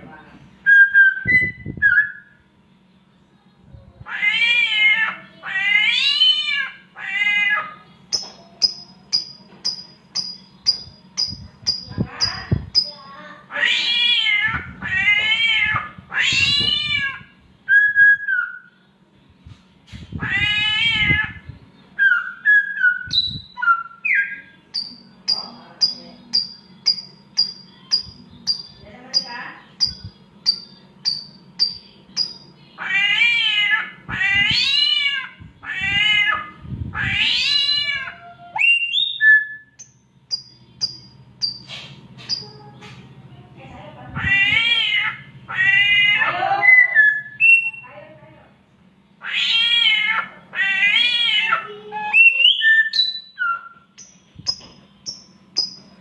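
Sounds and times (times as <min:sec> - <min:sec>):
steady low hum: 0:00.0 - 0:46.1, 0:52.8 - 0:56.0
bird whistling: 0:00.7 - 0:02.4, 0:08.2 - 0:13.0, 0:17.7 - 0:18.8, 0:22.0 - 0:32.4, 0:38.6 - 0:42.5, 0:46.6 - 0:47.9, 0:51.9 - 0:55.9
bird mimicking cat meows: 0:04.0 - 0:07.8, 0:13.5 - 0:17.3, 0:20.1 - 0:21.5, 0:31.6 - 0:38.9, 0:44.2 - 0:47.3, 0:49.2 - 0:53.7.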